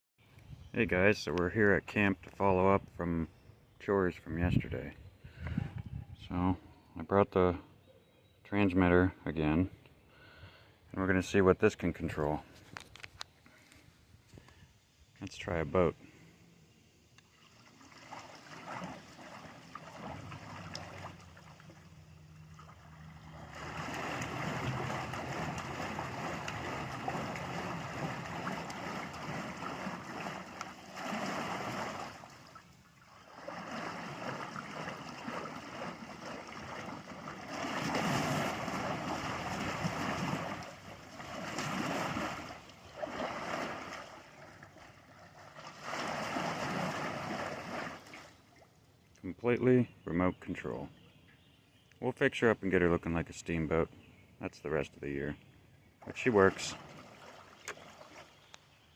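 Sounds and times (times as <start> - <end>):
paddle wheels churning water: 17.6 - 48.2.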